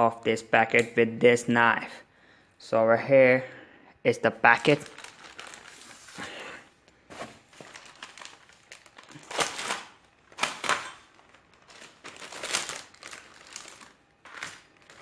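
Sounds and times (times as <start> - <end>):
packaging crinkling and rustling: 4.5 - 6.4, 7.0 - 15.0
knife cutting packaging: 9.0 - 11.2.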